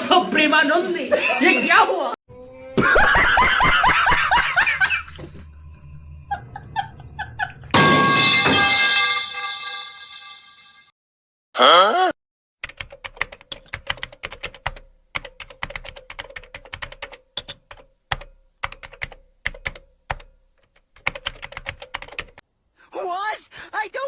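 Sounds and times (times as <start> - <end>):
wavering pitched tone: 2.3 - 2.9, 5.2 - 7.7
fast typing on keyboard: 12.6 - 22.4.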